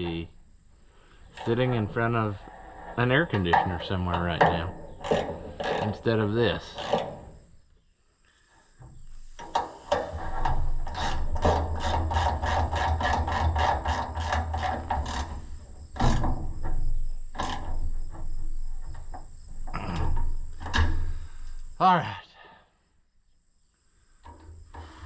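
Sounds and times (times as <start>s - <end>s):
metal parts knocking: 3.0s - 7.3s, 9.4s - 21.1s.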